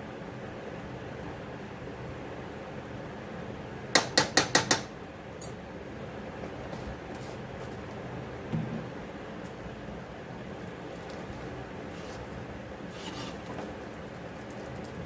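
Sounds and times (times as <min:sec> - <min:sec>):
dull knock: 0:08.5 - 0:08.9.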